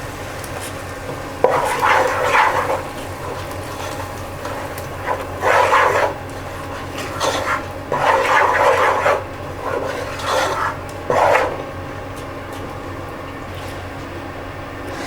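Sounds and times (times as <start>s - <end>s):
spoon scraping thick paste in pot: 1.4s - 11.7s.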